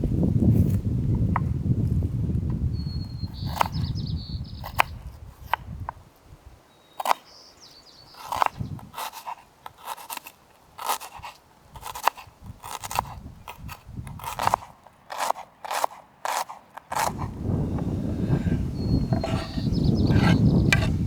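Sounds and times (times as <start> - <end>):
crisp food crunching and scraping: 8.2 - 17.4.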